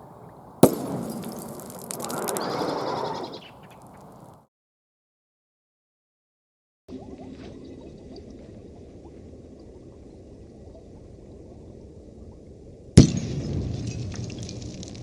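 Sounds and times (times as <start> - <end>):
crackling and rattling: 0.0 - 2.8
low steady rumble: 7.1 - 13.0.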